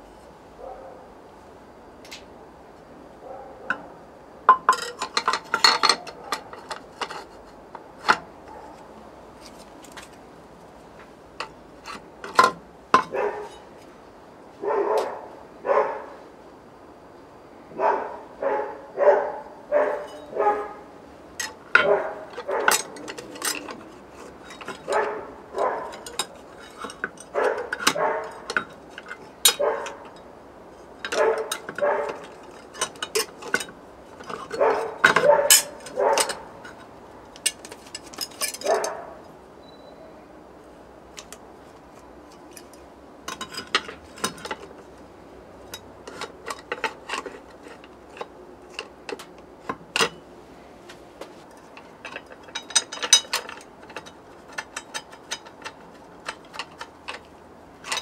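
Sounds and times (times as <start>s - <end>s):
dog barking: 0.6s - 1.1s, 3.2s - 3.8s, 13.1s - 13.5s, 14.6s - 16.1s, 17.8s - 20.8s, 24.9s - 26.0s, 27.4s - 28.3s, 29.6s - 30.0s, 31.2s - 32.2s, 34.6s - 36.4s, 38.6s - 39.2s
metallic clicks and clinks: 4.5s - 7.4s, 21.4s - 30.3s, 31.0s - 39.8s, 51.5s - 58.0s.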